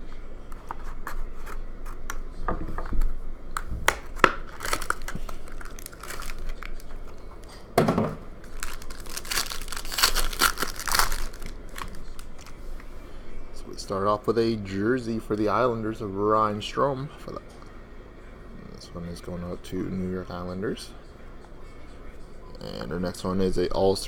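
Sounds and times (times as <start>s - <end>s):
wrapper tearing and crinkling: 3.8s - 7.5s, 8.4s - 12.6s.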